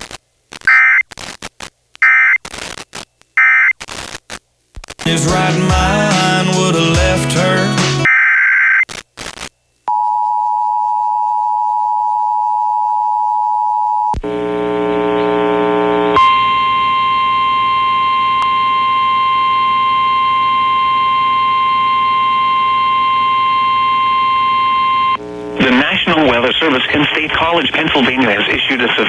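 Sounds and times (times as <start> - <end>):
digital data screech with blips: 0.7 - 1.1, 2.0 - 2.5
buzzy tone: 14.3 - 27.5
two-tone attention signal: 16.2 - 25.2
steady warning tone: 16.2 - 28.1
radio hiss: 25.2 - 29.0.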